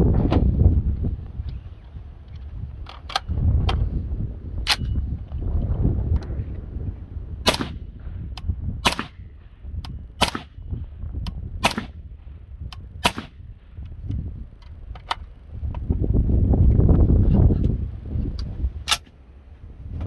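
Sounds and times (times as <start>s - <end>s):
suppressed rifle shots: 7.4s - 10.8s, 11.6s - 12.2s, 12.8s - 13.7s.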